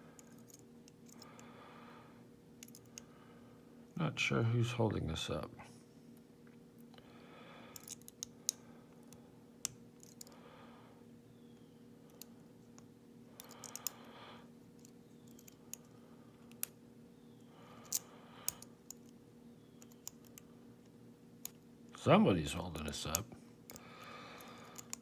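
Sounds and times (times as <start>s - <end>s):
lock pick clicking in padlock: 24.4s - 25.0s.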